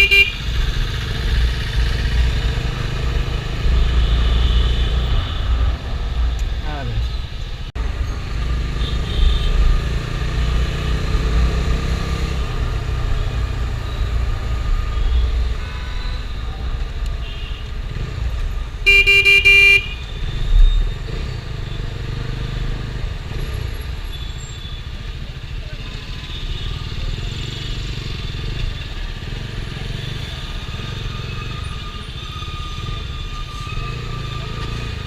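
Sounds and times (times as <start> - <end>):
vehicle horn: 0.0 - 0.6, 3.8 - 5.5, 8.8 - 9.7, 14.9 - 16.4, 17.2 - 17.7, 18.8 - 20.1.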